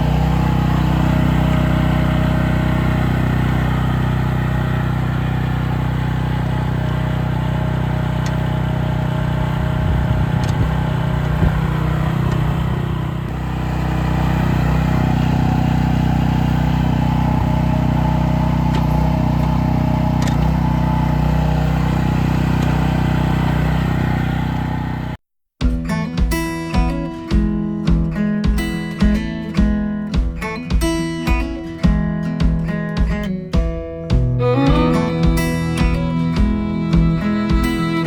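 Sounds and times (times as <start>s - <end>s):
mini excavator engine running: 0.0s - 25.2s, 34.2s - 38.0s.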